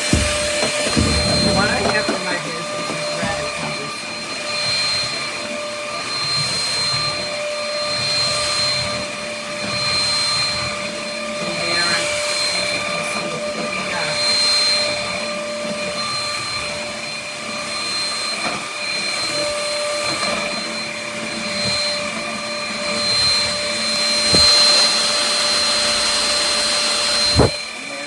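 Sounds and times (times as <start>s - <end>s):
knocks: 0.0s - 2.2s, 24.3s - 24.8s, 27.4s - 27.6s
stick vacuum running: 0.0s - 28.0s.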